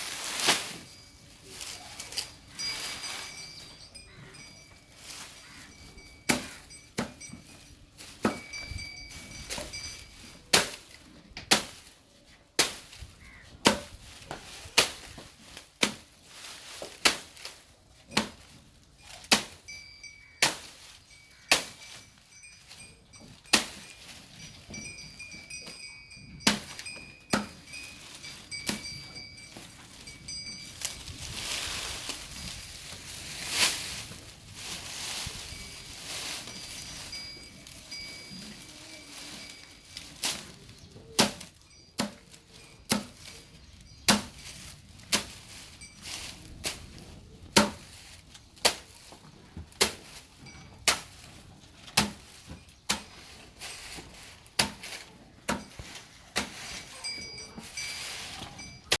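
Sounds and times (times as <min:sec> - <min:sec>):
bull tearing grass: 0:00.0 - 0:04.4, 0:12.6 - 0:19.7, 0:26.5 - 0:43.5, 0:44.1 - 0:59.0
grass rustling: 0:00.0 - 0:59.0.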